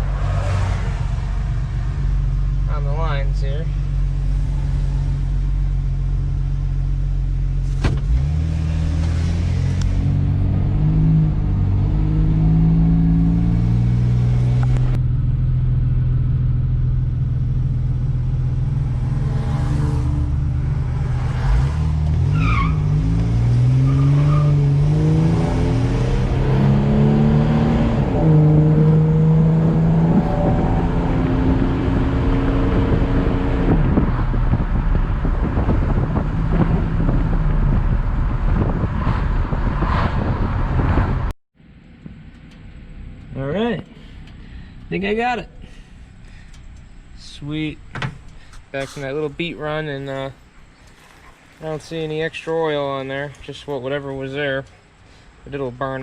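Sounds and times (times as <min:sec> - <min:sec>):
truck engine accelerating: 0:04.4 - 0:44.4.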